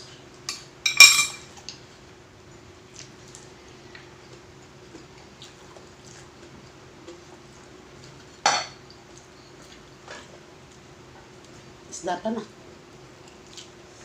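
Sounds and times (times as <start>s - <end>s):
tableware clatter: 0.5s - 1.5s, 8.5s - 8.8s
tableware clinking: 0.5s - 1.5s, 8.5s - 8.8s.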